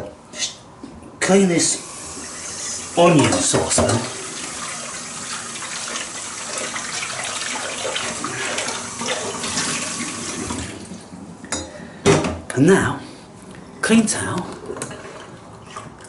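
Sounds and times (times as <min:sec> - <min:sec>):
saucepan being washed: 0:01.7 - 0:11.1, 0:14.7 - 0:16.0
tap running into sink: 0:03.2 - 0:04.2.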